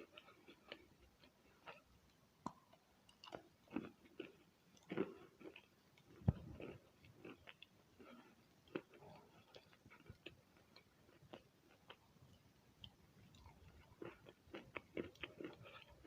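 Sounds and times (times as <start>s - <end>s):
chalk crunching while chewed: 12.8s - 16.0s.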